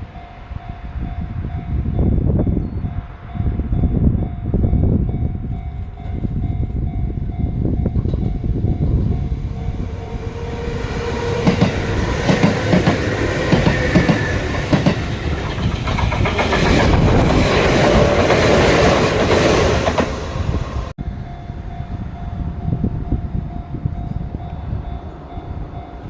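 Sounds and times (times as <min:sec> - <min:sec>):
train wheels clacking over rail joints: 0:11.2 - 0:20.3.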